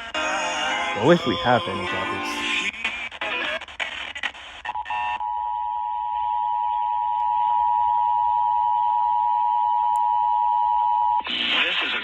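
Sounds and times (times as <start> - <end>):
broken radio static: 1.0 - 2.4.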